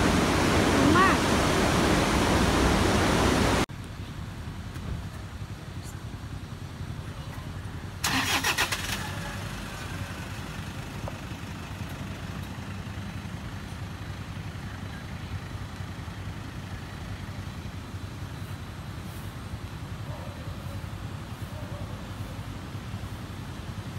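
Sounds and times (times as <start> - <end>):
engine starting and rumbling: 3.7 - 17.9.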